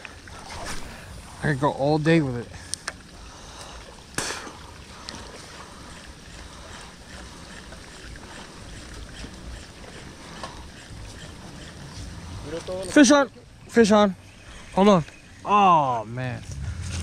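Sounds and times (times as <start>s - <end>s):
sharp whoosh: 16.4s - 17.0s
wind rumbling on microphone: 16.4s - 17.0s.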